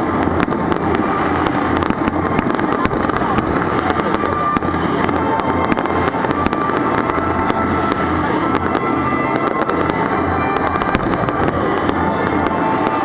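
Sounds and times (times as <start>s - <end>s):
fireworks crackling and popping: 0.0s - 13.0s
low rumble: 0.0s - 13.0s.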